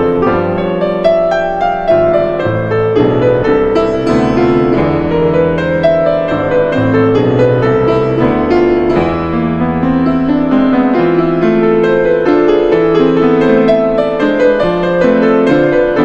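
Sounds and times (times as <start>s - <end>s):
piano notes over sustained chords: 0.0s - 16.0s.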